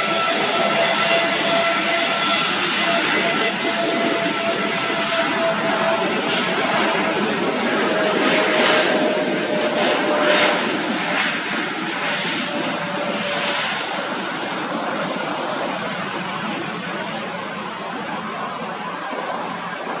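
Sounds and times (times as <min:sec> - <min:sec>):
airliner engines roaring: 0:00.0 - 0:20.0
jet engine whine: 0:00.0 - 0:20.0.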